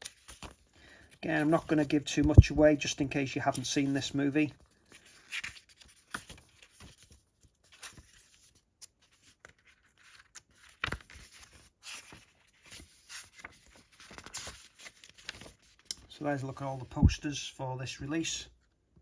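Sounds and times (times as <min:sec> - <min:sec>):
paper pages rustling: 0:00.0 - 0:17.2.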